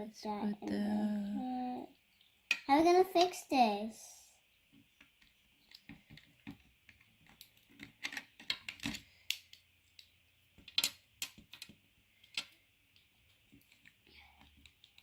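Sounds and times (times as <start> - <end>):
plastic pieces clicking: 5.2 - 15.0.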